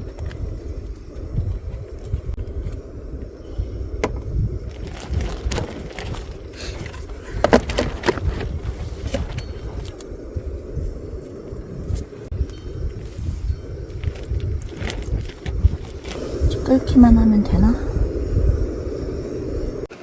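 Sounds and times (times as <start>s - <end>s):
wind rumbling on microphone: 0.0s - 20.0s.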